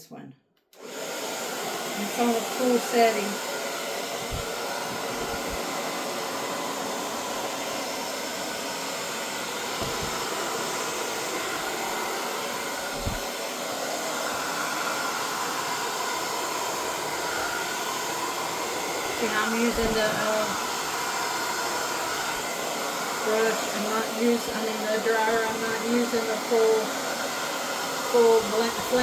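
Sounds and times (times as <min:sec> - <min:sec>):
hair dryer blowing: 0:00.7 - 0:29.0
low thumps: 0:04.2 - 0:05.6.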